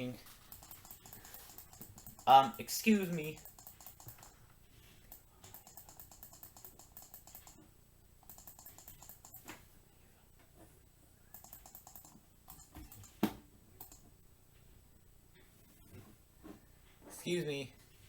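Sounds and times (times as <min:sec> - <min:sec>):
typing on a keyboard: 0:00.3 - 0:04.4, 0:05.1 - 0:07.6, 0:08.2 - 0:09.5, 0:11.3 - 0:13.2, 0:13.8 - 0:14.0.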